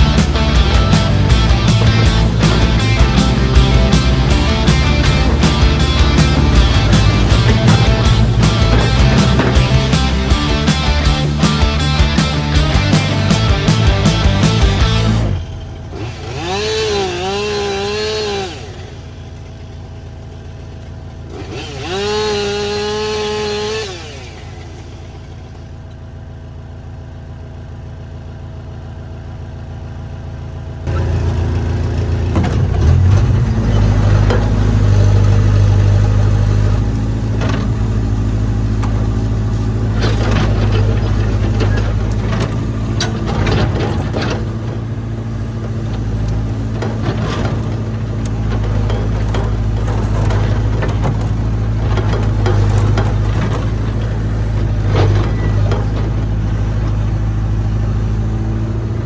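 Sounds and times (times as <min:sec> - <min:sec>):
diesel earthmover engine droning: 0:00.0 - 0:59.0
wood cracking and snapping: 0:30.9 - 0:57.2.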